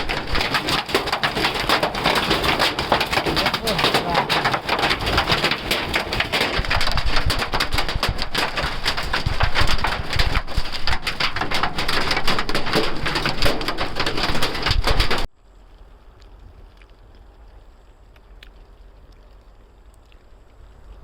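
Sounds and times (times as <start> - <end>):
hailstones pelting down: 0.0 - 15.3.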